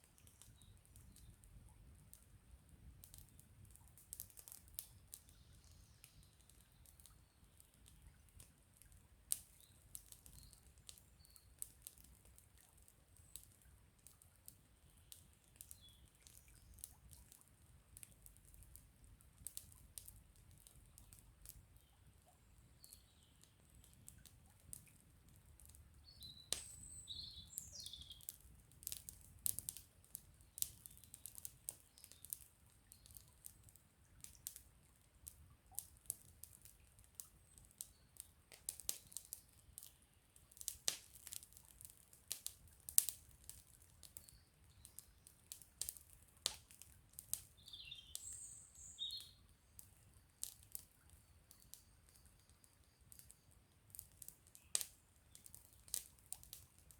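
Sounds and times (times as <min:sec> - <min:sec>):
campfire crackling and popping: 0:00.0 - 0:56.9
small bird chirping: 0:26.0 - 0:28.3, 0:47.6 - 0:49.4.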